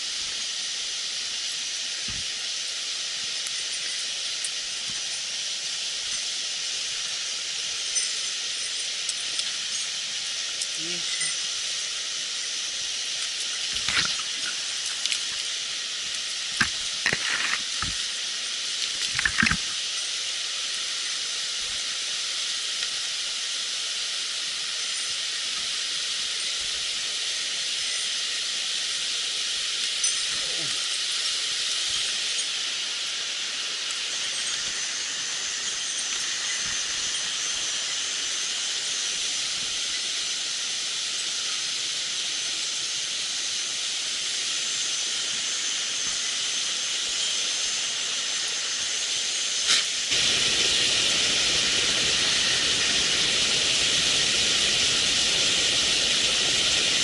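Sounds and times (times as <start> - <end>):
stream water rushing over rocks: 0.0 - 42.1, 45.5 - 57.0.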